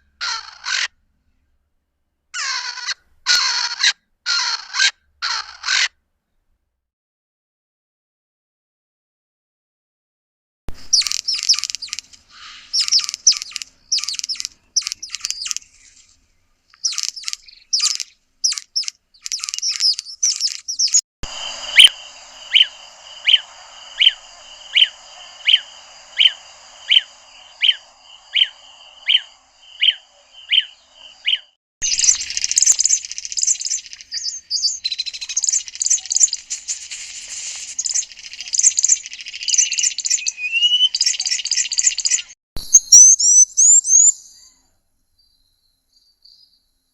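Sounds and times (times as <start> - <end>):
background hiss: 10.7 - 40.5
birds twittering chatter: 10.8 - 42.4
high bird chirping phrases: 10.8 - 44.7.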